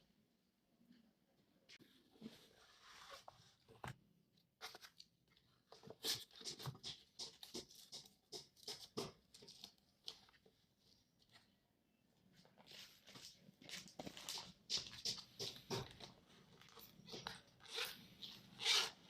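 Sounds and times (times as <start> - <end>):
rustling and tapping of packaging: 4.6 - 10.6, 12.5 - 17.7.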